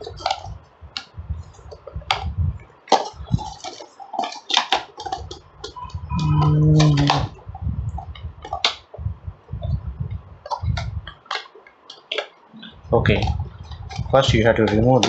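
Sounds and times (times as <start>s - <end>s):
plastic packaging clicks and taps: 10.4s - 12.3s.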